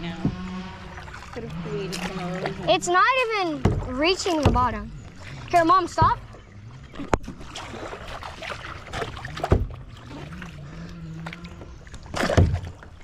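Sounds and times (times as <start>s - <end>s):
water sloshing and dripping: 0.0s - 13.0s
paddle knocking against kayak hull: 3.6s - 4.8s, 8.9s - 9.8s, 12.2s - 12.8s.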